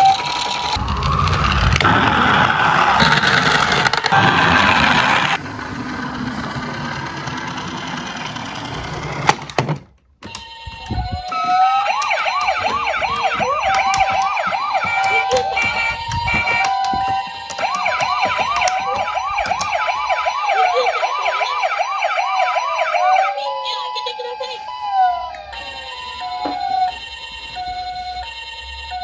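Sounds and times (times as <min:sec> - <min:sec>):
toy electronic siren: 0:00.0 - 0:05.4, 0:10.2 - 0:29.0
rough rattling noise: 0:00.3 - 0:07.8.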